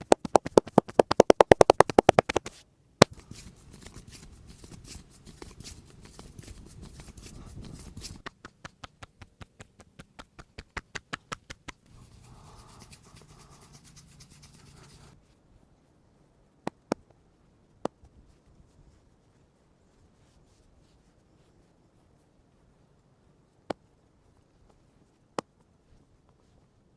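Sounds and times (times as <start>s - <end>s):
hands tapping on head: 0.0s - 3.9s, 5.3s - 15.1s
rubbing and scratching hair: 0.0s - 11.2s, 11.8s - 15.2s.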